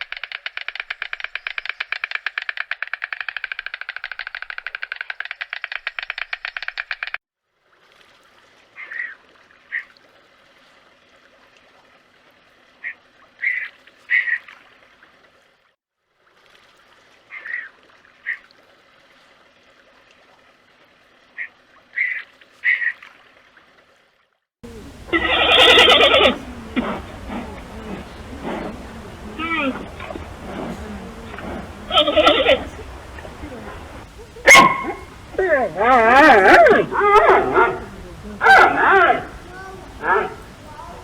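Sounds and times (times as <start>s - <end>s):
faint background hiss: 24.6s - 41.0s
duck-like bird calls: 24.9s - 35.4s.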